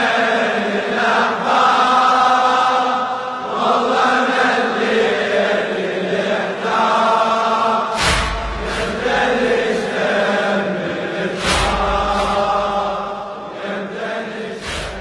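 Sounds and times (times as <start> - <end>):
wordless choral chanting: 0.0 - 15.0
deep drum thumps: 8.0 - 9.9, 11.4 - 13.1.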